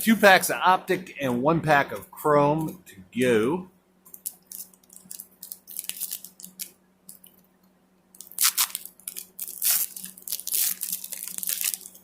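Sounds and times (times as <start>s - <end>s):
plastic wrapper crinkling and tearing: 4.1s - 7.4s, 8.2s - 12.0s.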